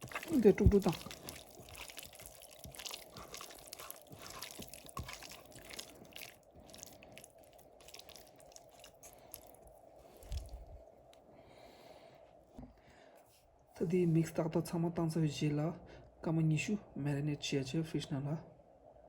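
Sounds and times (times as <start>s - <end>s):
wet squelching of meat mixing: 0.0s - 11.2s
faint steady hum: 0.0s - 19.0s.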